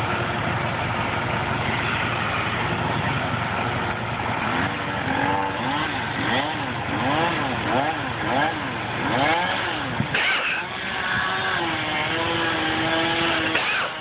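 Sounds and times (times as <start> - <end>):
engine running steadily: 0.0 - 14.0
small engine revving: 4.4 - 14.0.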